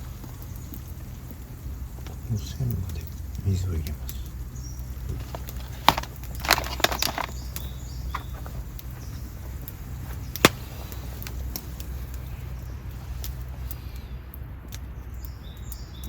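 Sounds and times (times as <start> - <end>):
low rumble: 0.0 - 6.4.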